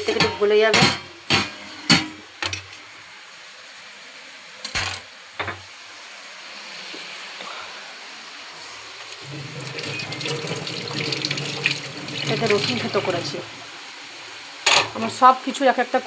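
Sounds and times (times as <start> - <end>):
kitchen utensils clanking: 0.0 - 2.8, 9.2 - 13.6.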